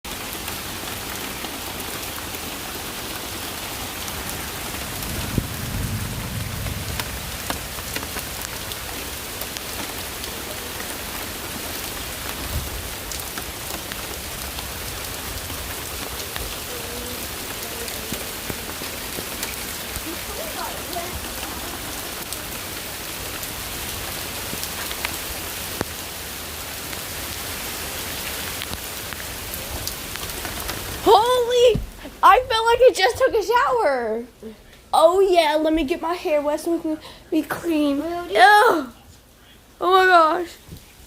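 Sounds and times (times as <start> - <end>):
heavy rain pouring: 0.0 - 41.0
low rumble: 4.7 - 8.6.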